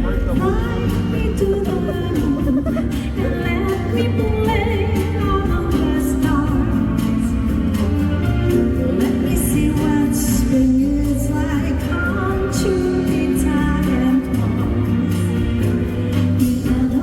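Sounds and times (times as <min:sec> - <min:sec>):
live band music: 0:00.0 - 0:17.0
woman singing: 0:00.0 - 0:17.0.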